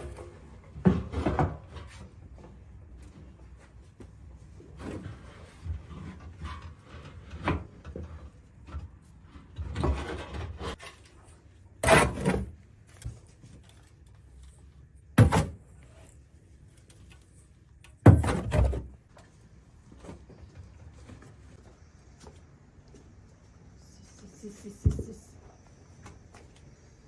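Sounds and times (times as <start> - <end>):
quiet rustling and scraping: 0.0 - 11.9, 12.6 - 15.1, 15.7 - 17.8, 19.0 - 27.0
loud knocks with scraping: 4.7 - 11.1, 15.1 - 15.8, 18.0 - 19.0.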